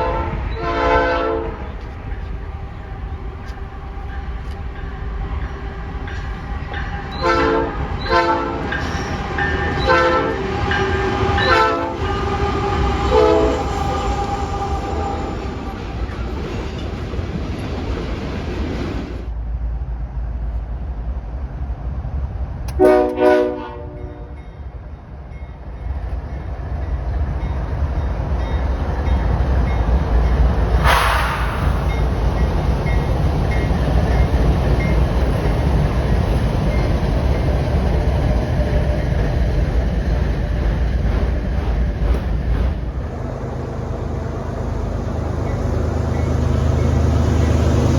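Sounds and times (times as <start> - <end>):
locomotive air horn blasts: 0.0 - 1.7, 7.2 - 8.8, 9.7 - 15.5, 22.7 - 24.4
passing train rumble: 0.0 - 47.9
rush of noise: 30.8 - 33.3.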